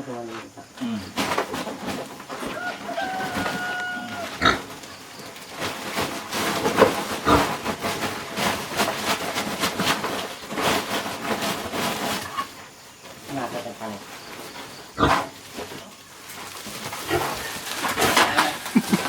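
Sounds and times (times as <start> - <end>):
pigs grunting: 1.8 - 4.9, 6.6 - 7.7, 14.9 - 15.4, 16.8 - 19.0.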